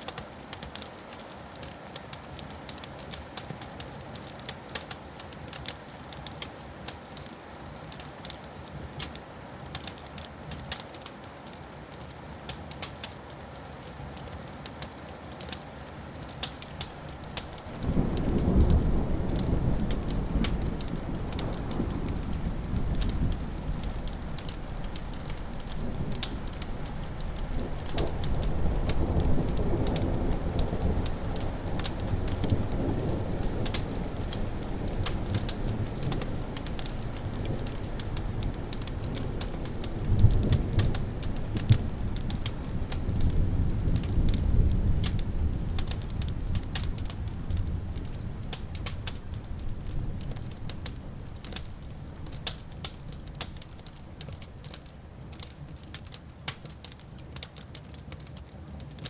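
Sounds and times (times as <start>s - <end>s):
wood fire crackling and popping: 0.0s - 59.0s
thunder rumbling: 16.5s - 52.8s.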